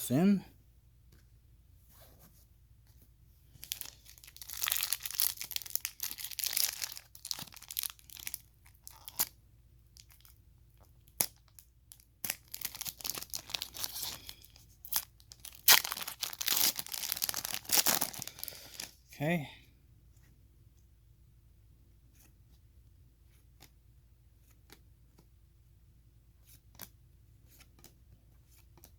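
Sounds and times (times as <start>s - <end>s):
foil packs tearing and crinkling: 3.6s - 9.3s, 12.3s - 18.9s
cards being handled: 26.4s - 28.9s.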